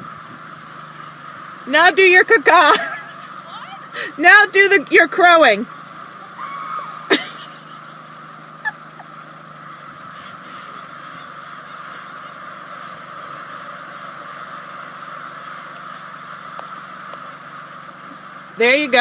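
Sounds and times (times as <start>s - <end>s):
car engine idling: 0.0s - 19.0s
crows cawing: 0.1s - 1.7s, 5.7s - 18.6s.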